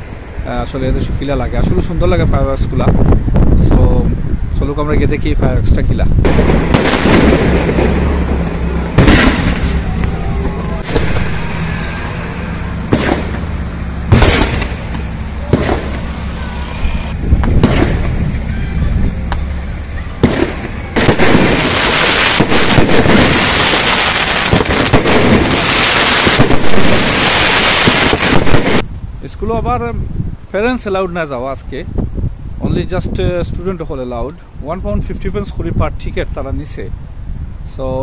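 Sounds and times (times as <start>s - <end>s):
steady rushing noise: 0.0s - 31.2s
fireworks bangs: 6.2s - 28.9s.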